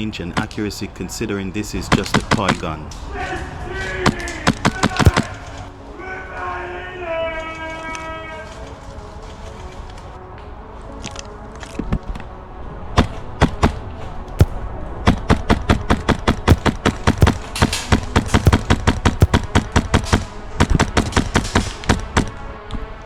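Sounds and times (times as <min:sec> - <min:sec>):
airsoft rifle shots: 0:04.1 - 0:05.4, 0:14.4 - 0:22.4.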